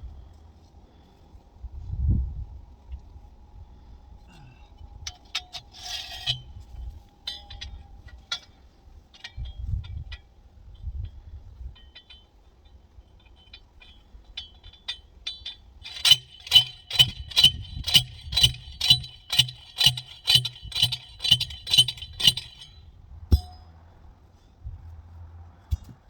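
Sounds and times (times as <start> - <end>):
light metal clinking: 5.0 - 10.3, 11.8 - 24.5
metal post pounded with ringing clanks: 7.3 - 8.5, 13.2 - 23.8.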